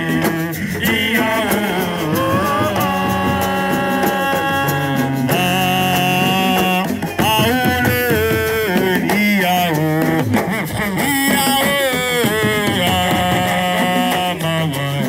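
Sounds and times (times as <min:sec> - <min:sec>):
solo voice singing ornamented notes: 0:00.0 - 0:10.2.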